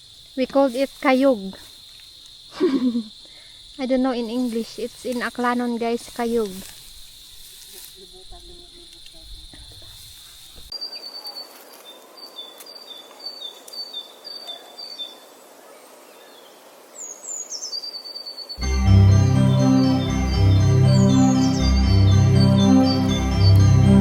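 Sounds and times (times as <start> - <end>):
high insect drone: 0.0 - 10.7, 18.6 - 24.0.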